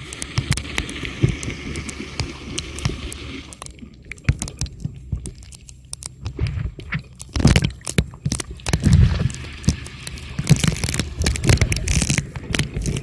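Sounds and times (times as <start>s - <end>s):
low rumble of moving water: 0.0s - 13.0s
underwater clicks and crackles: 0.0s - 13.0s.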